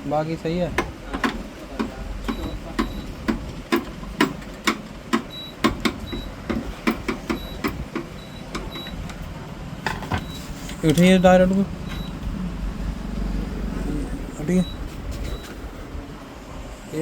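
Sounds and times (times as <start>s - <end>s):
faint high beeps: 2.3s - 3.1s, 11.8s - 12.2s, 14.3s - 15.6s.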